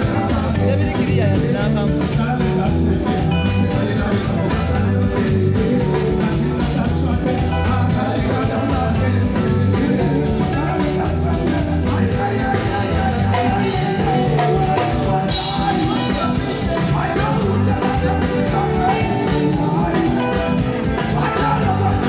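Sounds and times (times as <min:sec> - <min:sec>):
band playing upbeat music: 0:00.0 - 0:22.0
person singing: 0:00.0 - 0:22.0.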